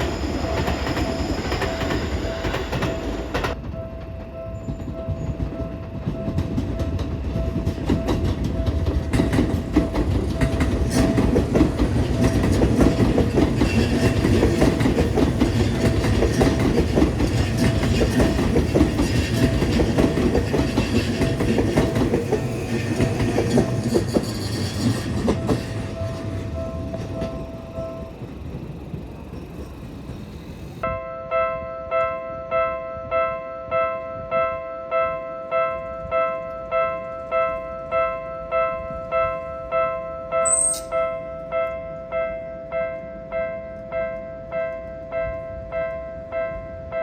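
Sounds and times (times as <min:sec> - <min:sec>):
crossing bell clanging: 0:00.0 - 0:29.6, 0:30.8 - 0:47.0
train wheels clattering: 0:00.0 - 0:30.8.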